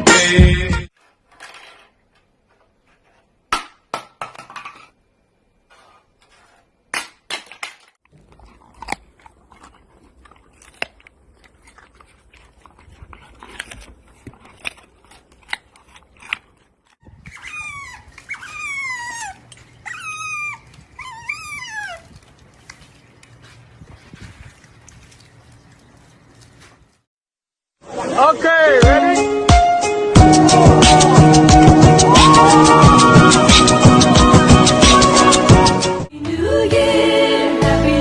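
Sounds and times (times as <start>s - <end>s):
dog whining: 17.1s - 22.2s.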